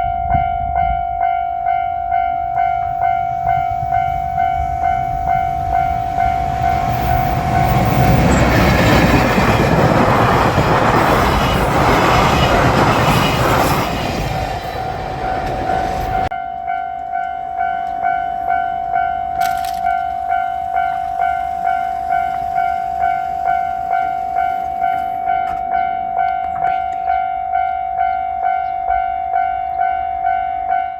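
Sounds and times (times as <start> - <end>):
level crossing alarm bell: 0.0 - 30.9
freight train rumbling and clattering: 2.6 - 16.3, 18.0 - 27.7.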